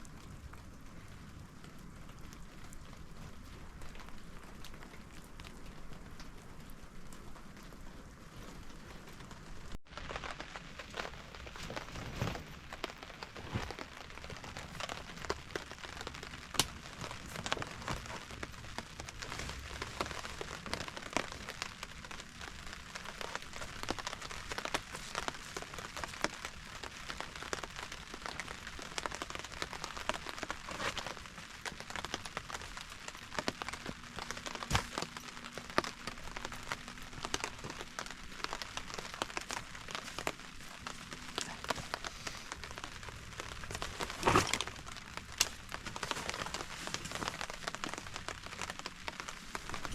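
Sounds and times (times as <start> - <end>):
raindrops tapping a surface: 0.0 - 49.9
steady rain: 0.0 - 49.9.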